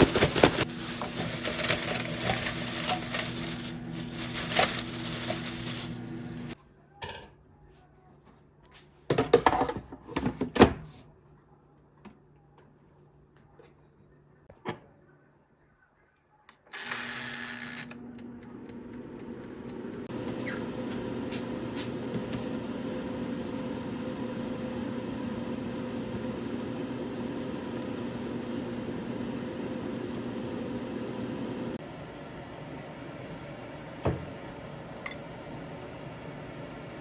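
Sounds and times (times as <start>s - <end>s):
kitchen appliance humming: 0.0s - 6.6s, 16.8s - 37.0s.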